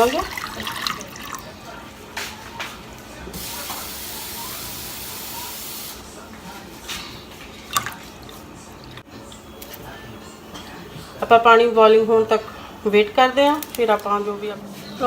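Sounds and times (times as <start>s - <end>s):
water pouring into a pan: 0.0s - 1.5s.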